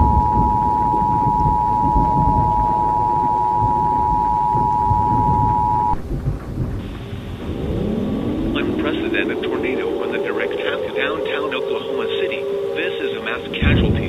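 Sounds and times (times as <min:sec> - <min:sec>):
two-tone alert alarm: 0:00.0 - 0:06.0
thunder rumble: 0:00.0 - 0:14.0.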